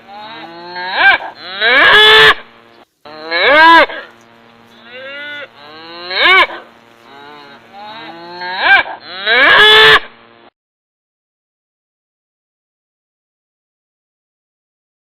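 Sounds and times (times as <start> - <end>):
cattle mooing: 0.0 - 2.4, 3.1 - 10.0.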